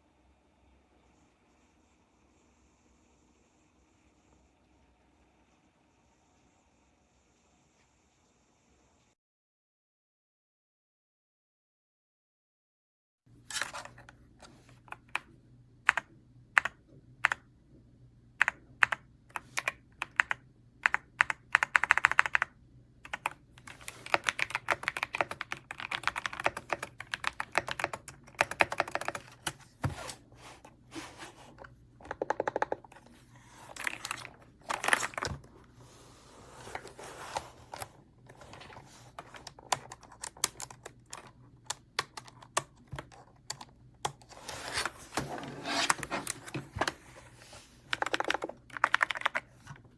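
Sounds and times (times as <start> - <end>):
mechanical keyboard typing: 15.9 - 17.4, 18.4 - 29.6, 32.0 - 33.0, 33.7 - 35.4, 39.2 - 44.3, 47.9 - 49.8.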